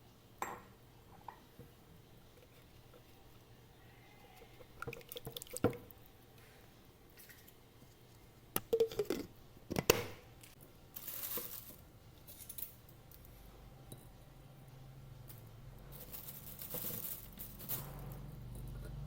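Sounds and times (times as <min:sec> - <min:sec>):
liquid splashing and pouring: 0:04.8 - 0:05.8.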